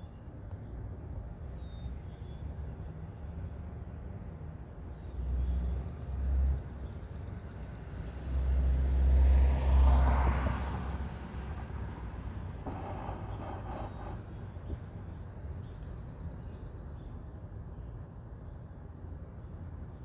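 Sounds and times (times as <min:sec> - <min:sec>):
vehicle passing with tyre noise: 0:05.4 - 0:17.0.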